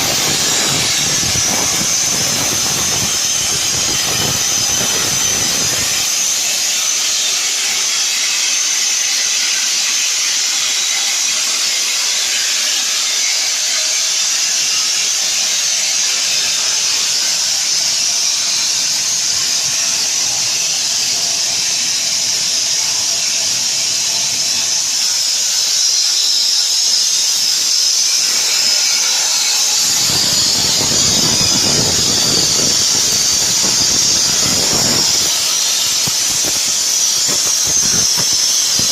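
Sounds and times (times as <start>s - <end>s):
deep rushing noise: 0.0s - 6.4s, 28.3s - 38.9s
plasma cutter hissing: 0.0s - 8.8s, 15.8s - 38.9s.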